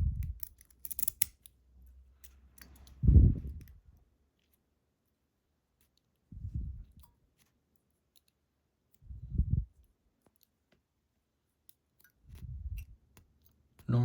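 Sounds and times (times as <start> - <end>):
small metallic clicks: 0.2 - 3.8, 6.8 - 9.0.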